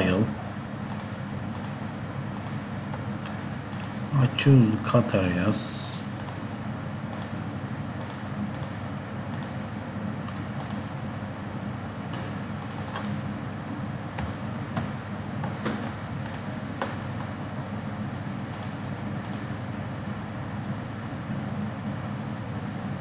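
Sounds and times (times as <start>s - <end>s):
steady low hum: 0.0s - 23.0s
computer mouse clicks: 0.9s - 1.8s, 2.4s - 2.6s, 3.2s - 4.0s, 6.2s - 6.4s, 7.1s - 7.4s, 8.0s - 9.6s, 10.3s - 10.9s, 12.6s - 13.1s, 16.2s - 16.5s, 18.5s - 19.5s.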